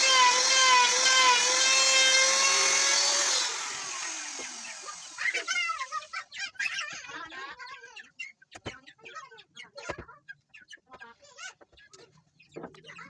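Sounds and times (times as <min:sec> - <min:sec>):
power tool motor whining: 0:00.0 - 0:05.9.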